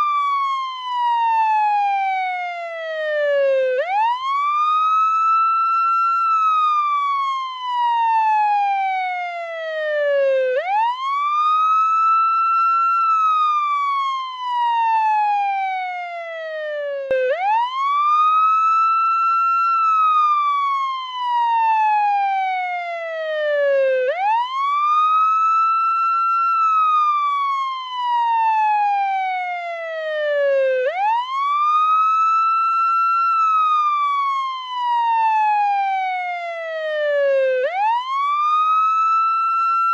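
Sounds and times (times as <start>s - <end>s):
ambulance wail siren: 0.0s - 39.9s.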